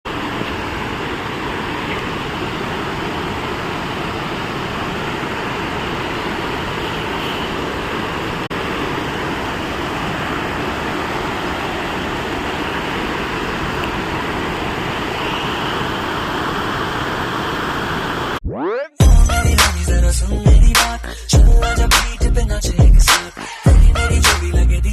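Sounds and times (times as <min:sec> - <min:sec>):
steady rushing noise: 0:00.1 - 0:18.4.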